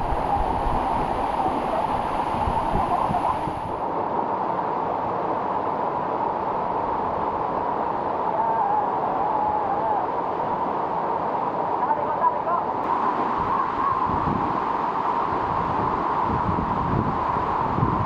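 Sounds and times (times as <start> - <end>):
waterfall rushing: 0.0 - 3.8
wind buffeting microphone: 0.0 - 3.9, 12.8 - 14.7, 15.3 - 18.0.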